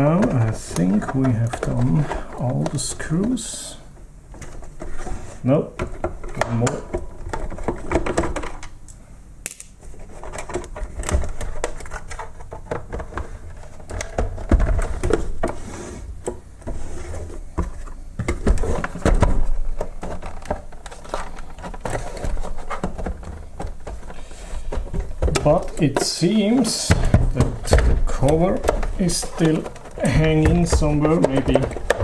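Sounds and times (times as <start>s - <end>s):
dull thumps: 17.4s - 32.0s.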